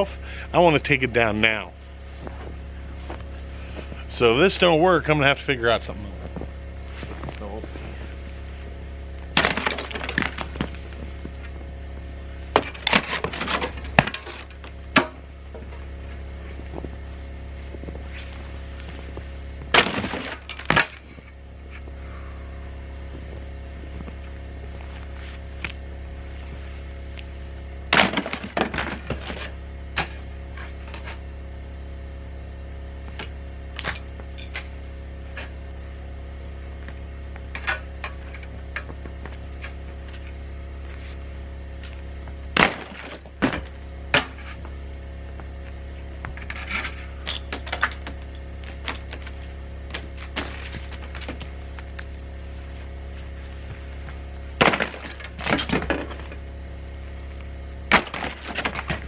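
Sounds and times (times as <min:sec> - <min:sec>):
steady low hum: 0:00.0 - 0:59.0
ice knocked off a metal roof: 0:09.3 - 0:10.7, 0:19.7 - 0:21.0, 0:54.6 - 0:56.2.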